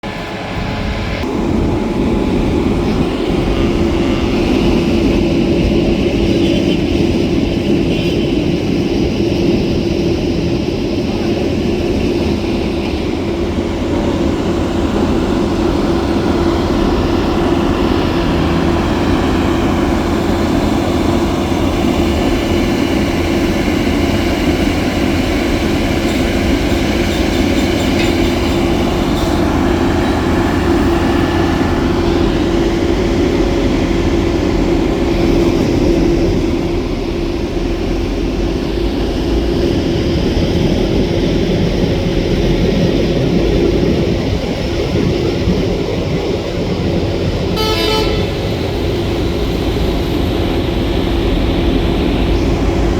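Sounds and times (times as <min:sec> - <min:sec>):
high whining tones: 0:00.0 - 0:39.8, 0:46.2 - 0:51.2
paving machinery engine rumbling: 0:00.0 - 0:52.9.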